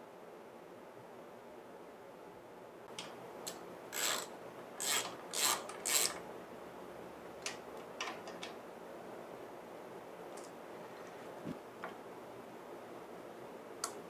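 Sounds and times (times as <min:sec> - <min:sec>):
light clicks: 0:13.8 - 0:14.0.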